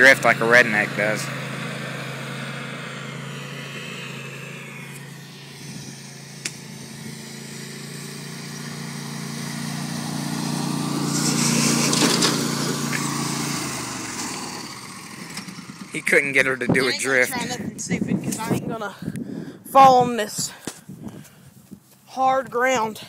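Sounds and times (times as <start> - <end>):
riding mower engine running: 0.0 - 19.0
sharp click: 6.4 - 6.6.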